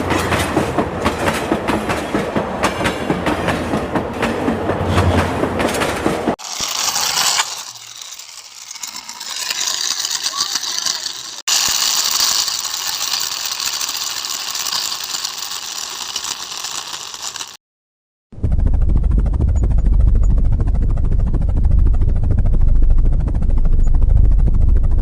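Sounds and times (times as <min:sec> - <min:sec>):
toy motor and gears rattling: 0:06.4 - 0:17.6.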